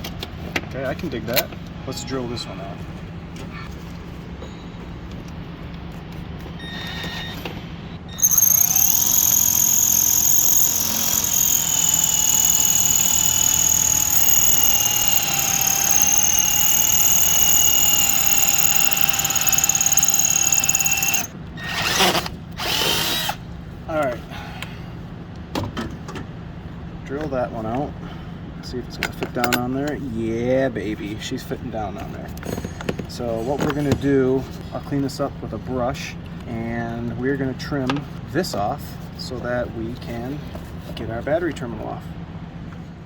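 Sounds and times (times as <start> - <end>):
electric drill cutting metal: 8.1 - 23.4.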